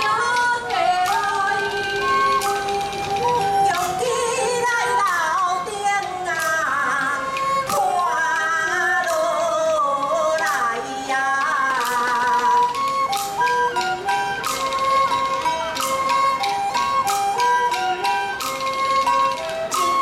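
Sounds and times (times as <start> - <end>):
sliding wavering melody: 0.0 - 9.5, 10.9 - 20.0
held instrumental notes: 0.0 - 20.0
sharp percussion strikes: 11.8 - 20.0.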